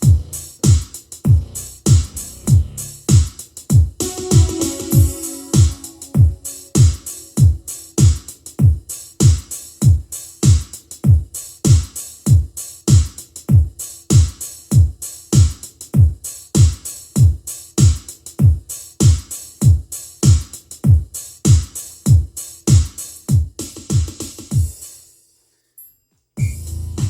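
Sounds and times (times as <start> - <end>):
electronic music over speakers: 0.0 - 3.3, 3.9 - 8.6
deep kick drums: 0.0 - 10.1
hi-hats ticking: 0.0 - 25.1.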